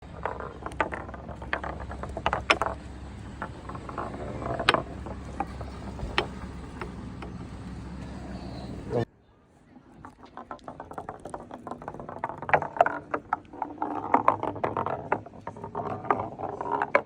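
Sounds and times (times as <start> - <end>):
steady low hum: 0.0 - 9.1
wood knocking against wood: 0.2 - 7.5.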